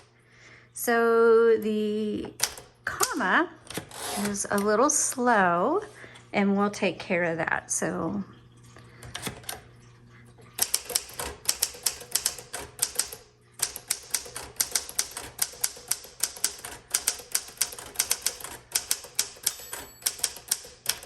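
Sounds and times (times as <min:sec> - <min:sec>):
manual typewriter keystrokes: 0:02.2 - 0:04.8, 0:09.0 - 0:09.6, 0:10.6 - 0:21.0
typewriter carriage bell ringing: 0:10.6 - 0:21.0.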